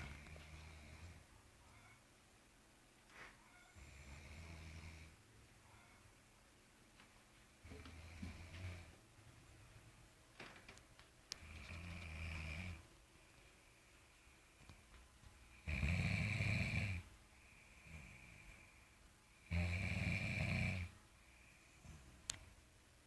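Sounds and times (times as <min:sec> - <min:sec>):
loud deep snores: 0:15.6 - 0:17.1, 0:19.5 - 0:20.9.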